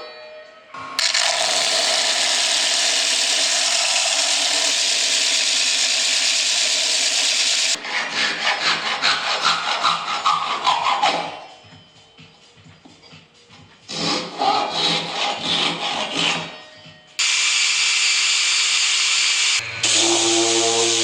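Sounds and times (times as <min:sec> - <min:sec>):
tool cutting into wood: 0:01.0 - 0:11.2.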